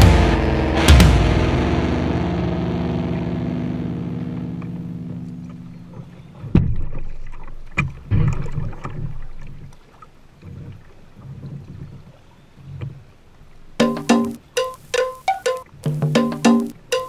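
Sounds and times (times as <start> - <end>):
sharp knocks: 13.8 - 17.0.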